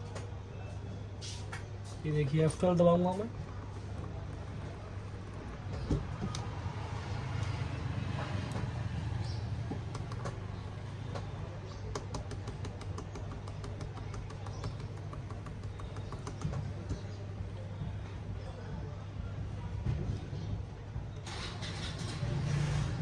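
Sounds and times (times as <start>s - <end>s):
laptop keys tapped rapidly: 9.7s - 17.0s.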